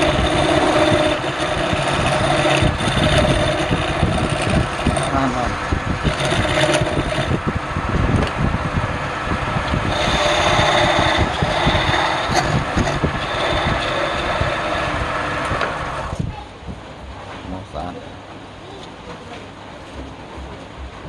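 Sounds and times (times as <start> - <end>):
tool scraping spinning wood: 0.0 - 7.5, 9.6 - 16.2
wood lathe drone: 0.0 - 7.5, 9.6 - 16.2.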